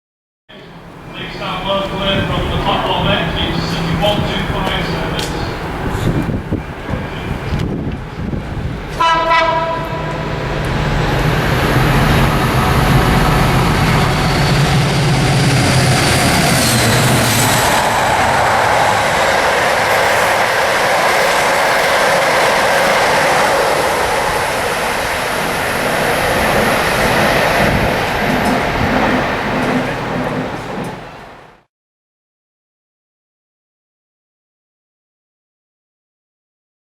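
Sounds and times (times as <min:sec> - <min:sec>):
diesel locomotive engines at full power: 0:00.5 - 0:31.7
wheels rumbling on rail: 0:00.5 - 0:31.7
two-tone locomotive horn: 0:09.0 - 0:10.5.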